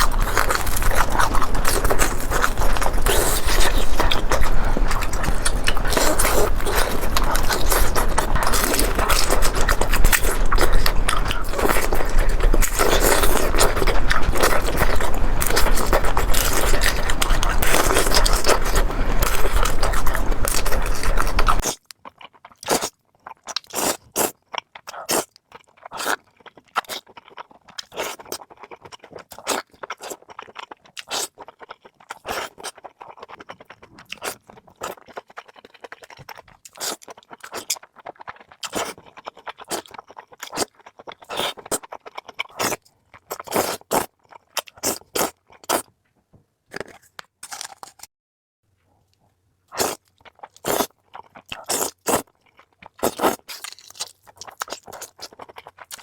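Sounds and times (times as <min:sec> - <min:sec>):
wet mouth sounds: 0:00.0 - 0:21.8, 0:49.7 - 0:52.3
food chewing crunches: 0:00.0 - 0:48.1, 0:49.1 - 0:56.0.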